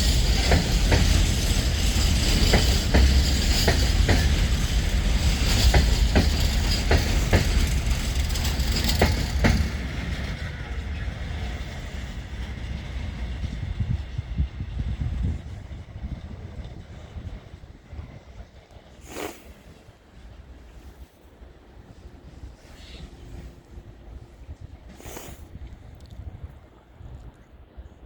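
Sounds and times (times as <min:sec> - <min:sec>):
train wheels clicking over joints: 0:00.0 - 0:20.5
train rumble: 0:00.0 - 0:28.0.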